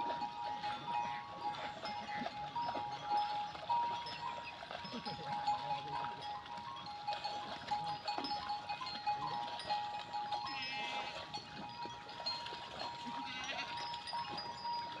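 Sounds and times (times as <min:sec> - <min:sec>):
quavering bleat: 0:13.2 - 0:13.8.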